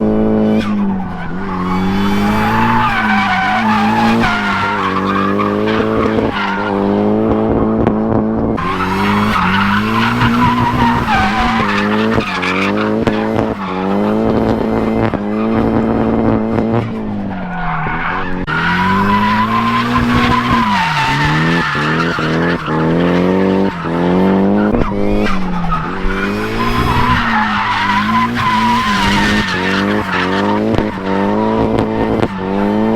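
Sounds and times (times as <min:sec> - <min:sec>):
car engine revving: 0:00.0 - 0:32.9
tire squeal: 0:00.3 - 0:07.8, 0:08.5 - 0:32.9.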